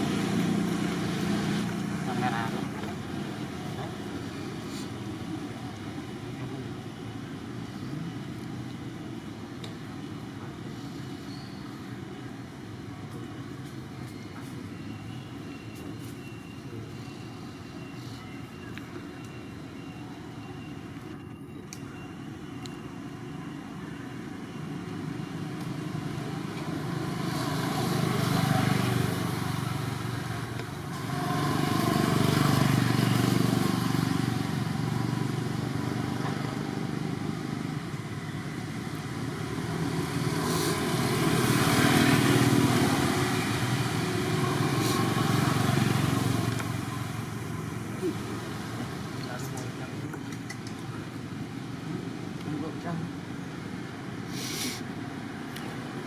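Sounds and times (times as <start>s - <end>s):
motor vehicles passing by: 0.0s - 19.7s, 24.1s - 56.0s.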